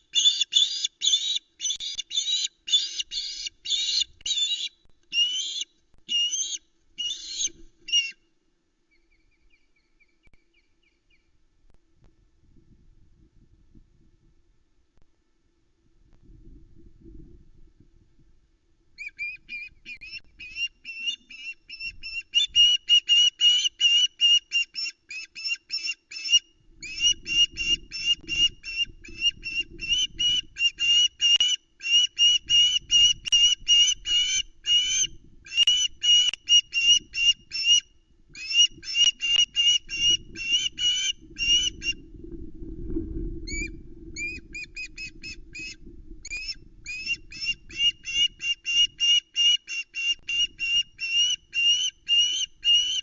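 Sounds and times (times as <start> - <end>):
low rumble: 42.0 - 46.8.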